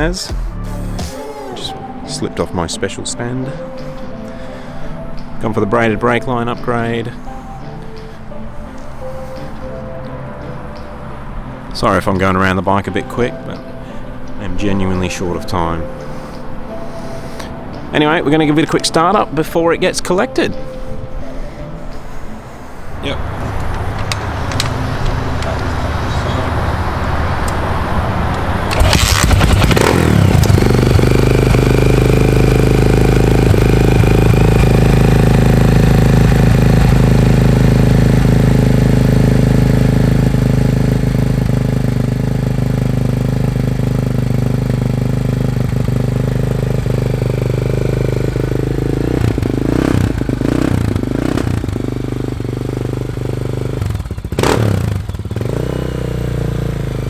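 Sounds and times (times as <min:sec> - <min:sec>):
dirt bike engine starting and idling: 0:23.3 - 0:57.0.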